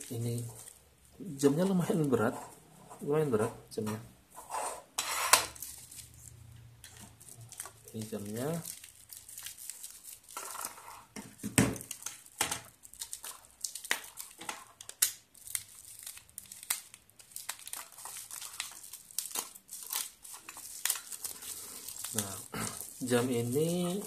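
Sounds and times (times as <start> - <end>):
packaging crinkling and rustling: 5.5 - 24.0.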